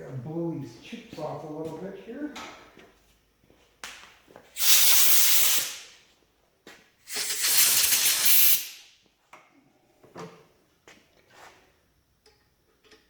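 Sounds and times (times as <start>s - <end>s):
compressed air blowgun hissing: 4.6s - 5.9s, 7.1s - 8.9s.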